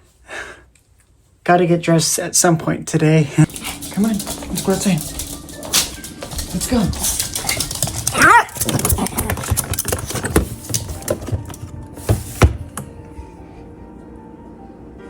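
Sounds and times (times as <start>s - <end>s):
small dog yelping: 7.4s - 8.7s.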